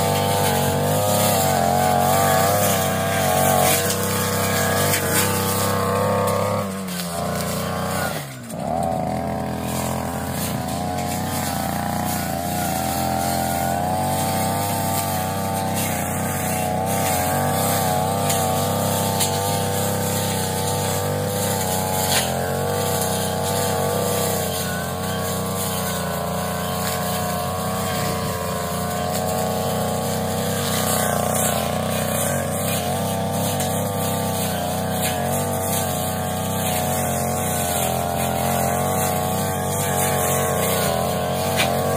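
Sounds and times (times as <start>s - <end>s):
brush cutter engine running: 0.0s - 41.9s.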